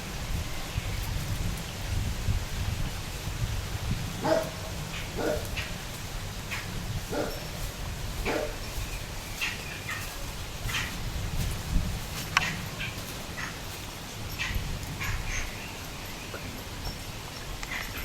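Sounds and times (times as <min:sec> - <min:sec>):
small birds chirping: 0:04.1 - 0:18.0
dog barking: 0:04.2 - 0:05.6, 0:07.1 - 0:07.5, 0:08.2 - 0:08.6.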